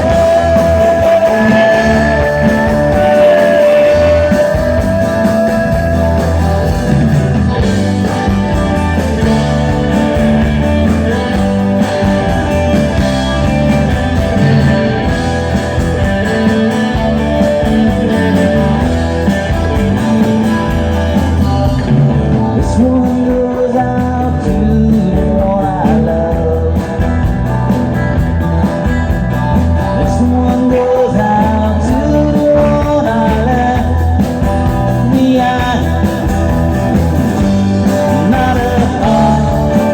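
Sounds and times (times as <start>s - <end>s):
person singing: 0.0s - 7.6s, 19.9s - 27.3s, 29.9s - 36.5s, 37.4s - 39.9s
bass: 0.0s - 39.9s
electric guitar: 0.0s - 39.9s
steady drum beat: 0.0s - 39.9s.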